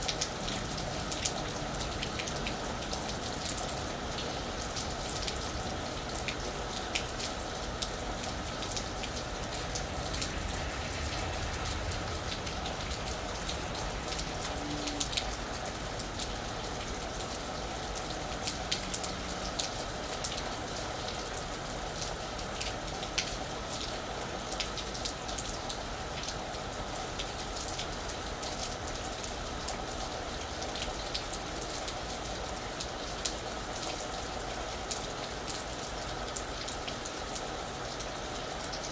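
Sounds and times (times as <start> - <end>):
rain falling on a roof: 0.0 - 38.9
sharp raindrop hits: 6.1 - 18.9.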